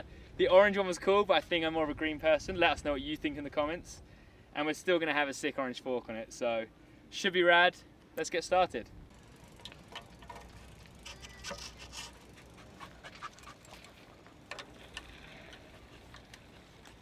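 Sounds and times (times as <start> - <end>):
bike parts and tools clicking: 9.1 - 17.0.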